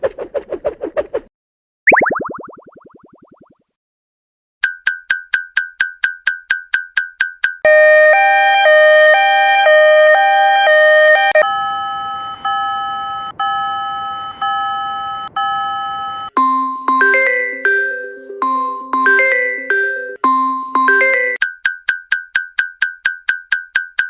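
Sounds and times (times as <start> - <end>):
two-tone alarm: 7.7 - 21.4
slow chime: 16.3 - 21.4.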